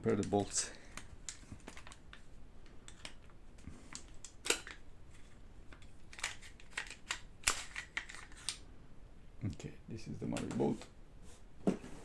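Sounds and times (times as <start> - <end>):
airsoft rifle parts clicking: 5.7 - 8.6.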